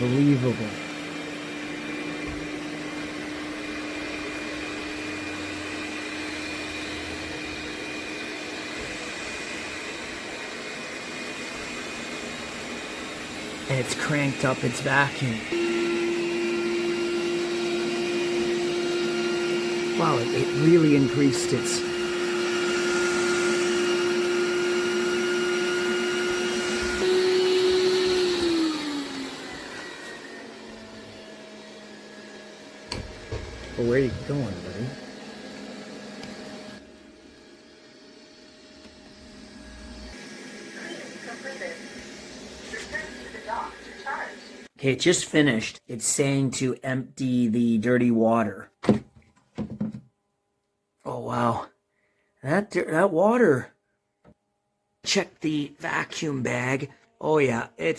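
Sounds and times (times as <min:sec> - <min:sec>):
robot vacuum whirring: 0:00.0 - 0:44.7.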